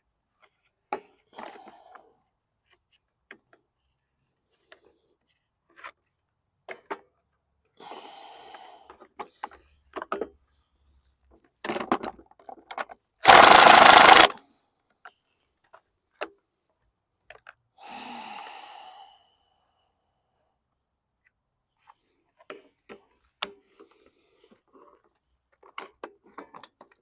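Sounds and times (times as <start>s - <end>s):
power tool hammering: 13.2s - 14.3s.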